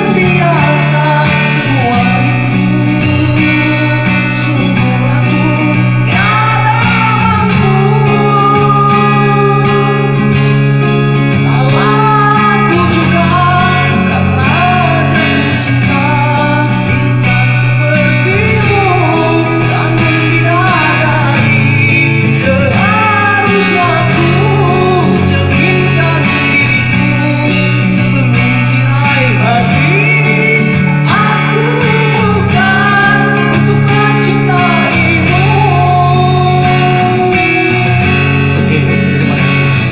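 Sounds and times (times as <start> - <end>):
guitar chords: 0.0 - 39.9
person singing: 0.0 - 39.9.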